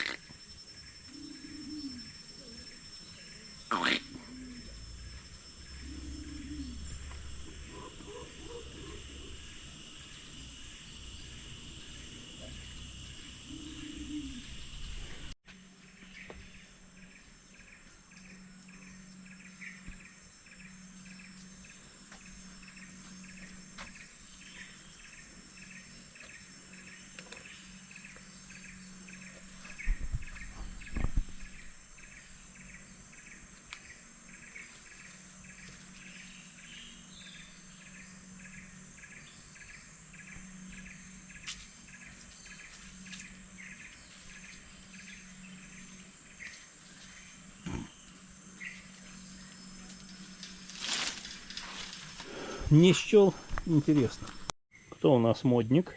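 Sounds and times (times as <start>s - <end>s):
low animal calls: 0.0s - 0.4s, 1.1s - 10.6s, 12.2s - 15.4s, 47.4s - 53.3s
insects droning: 0.0s - 55.9s.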